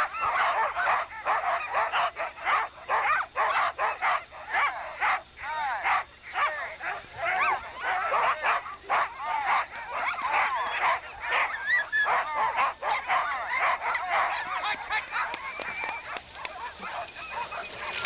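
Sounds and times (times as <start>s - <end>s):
dogs barking and yelping: 0.0s - 18.0s.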